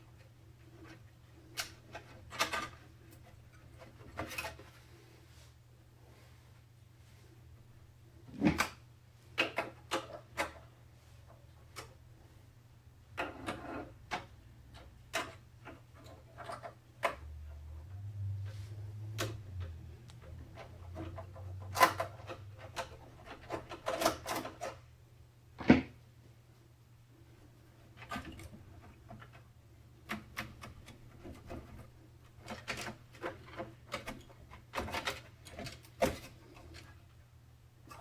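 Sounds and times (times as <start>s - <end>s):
clicks and knocks of computer parts: 32.4s - 36.9s.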